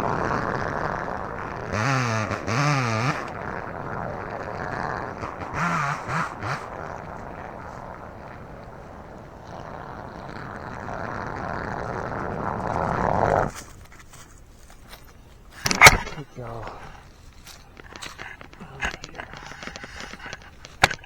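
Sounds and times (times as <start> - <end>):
chainsaw cutting: 0.0 - 13.6, 15.0 - 21.0.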